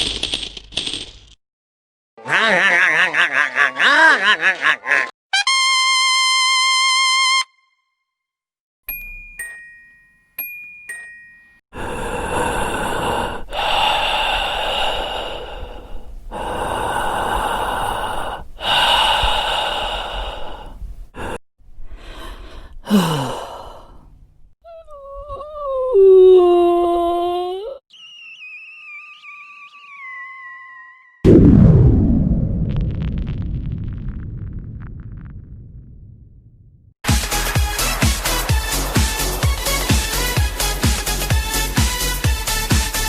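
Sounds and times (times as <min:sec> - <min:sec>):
two-note ding-dong chimes: 0:08.9 - 0:11.6
loud breathy sighs: 0:11.8 - 0:24.2.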